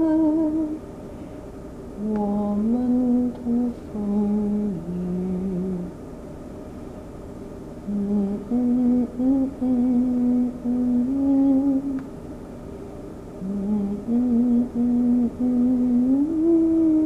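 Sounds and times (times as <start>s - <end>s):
person humming a slow melody: 0.0s - 0.8s, 2.0s - 5.9s, 7.9s - 12.1s, 13.4s - 17.0s.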